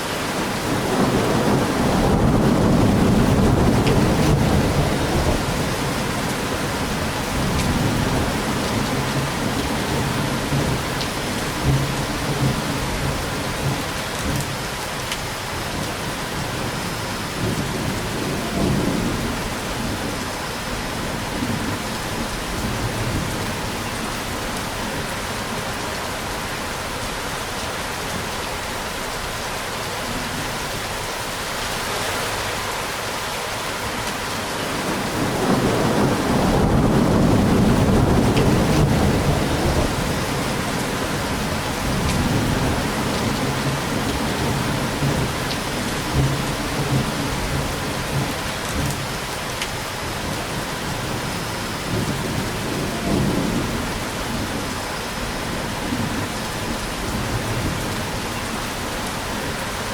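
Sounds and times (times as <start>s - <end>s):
heavy rain: 0.0s - 59.9s
thunder rolling: 0.7s - 14.4s, 34.7s - 49.1s.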